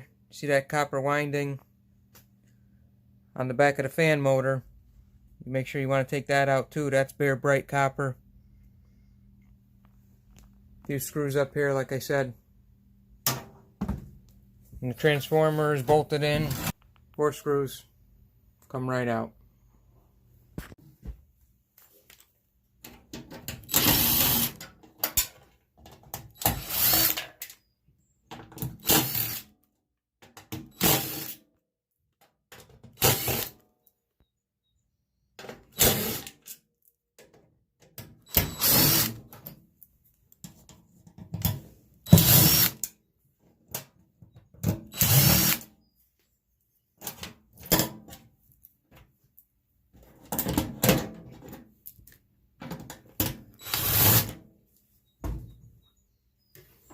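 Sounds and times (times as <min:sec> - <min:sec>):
cordless power drill bursts: 0:23.6 - 0:24.6, 0:26.4 - 0:27.2, 0:28.8 - 0:29.4, 0:30.7 - 0:31.4, 0:33.0 - 0:33.5, 0:35.8 - 0:36.3, 0:38.3 - 0:39.2, 0:42.1 - 0:42.8, 0:44.9 - 0:45.6, 0:53.6 - 0:54.3.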